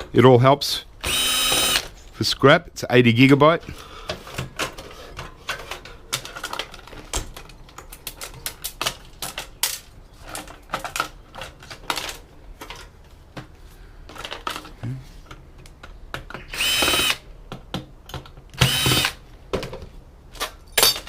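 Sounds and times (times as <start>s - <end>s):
small metal parts and tools clattering: 4.1s - 13.0s, 14.1s - 17.1s, 19.6s - 21.0s.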